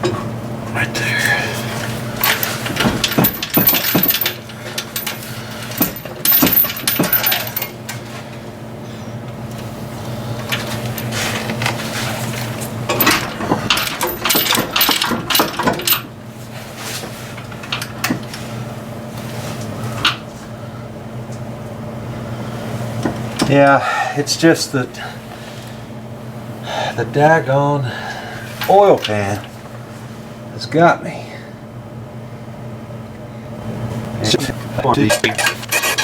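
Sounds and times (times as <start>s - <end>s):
low two-tone hum: 0.0s - 36.0s
metal clinking and rattling: 2.2s - 8.0s, 12.9s - 16.1s.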